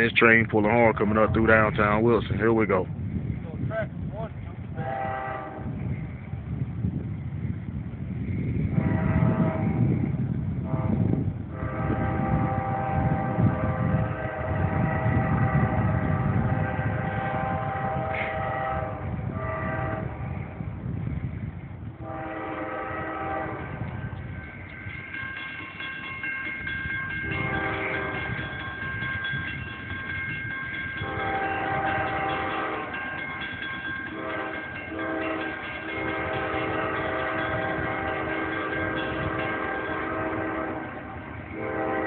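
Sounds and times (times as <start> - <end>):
diesel locomotive rumble: 0.0 - 42.0
locomotive air horn blasts: 4.8 - 5.8, 8.7 - 9.9, 10.6 - 20.2, 22.0 - 24.0, 27.2 - 28.5, 31.0 - 33.1, 34.1 - 42.0.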